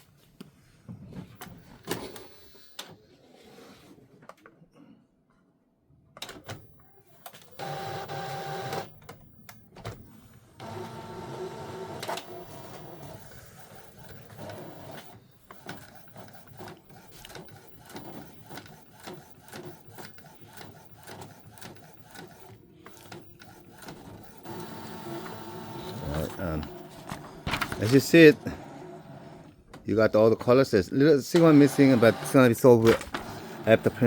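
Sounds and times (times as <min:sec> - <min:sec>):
printer motor whine: 0:07.6 - 0:09.2, 0:09.9 - 0:29.6, 0:31.4 - 0:34.0
printer clicks and ticks: 0:10.6 - 0:28.2, 0:31.3 - 0:34.0.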